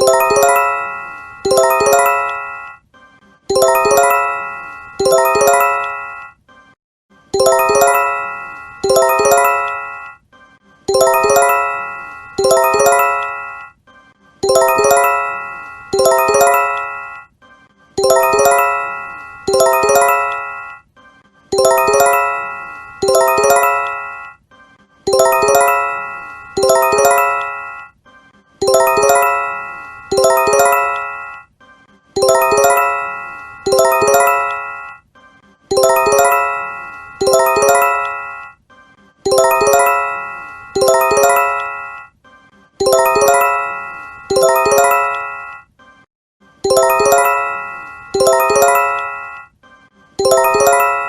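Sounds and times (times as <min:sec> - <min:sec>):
electronic alert chime: 0:00.0 - 0:02.8, 0:03.5 - 0:06.3, 0:07.4 - 0:10.2, 0:10.9 - 0:13.7, 0:14.4 - 0:17.3, 0:18.0 - 0:20.8, 0:21.6 - 0:24.4, 0:25.1 - 0:27.9, 0:28.6 - 0:31.4, 0:32.2 - 0:35.0, 0:35.7 - 0:38.6, 0:39.3 - 0:42.1, 0:42.8 - 0:45.7, 0:46.7 - 0:49.5, 0:50.2 - 0:51.0.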